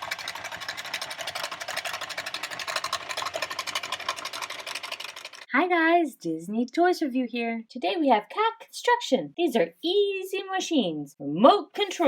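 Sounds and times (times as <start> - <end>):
rapid mechanical clicking: 0.0 - 5.5
small motor running: 0.0 - 5.5.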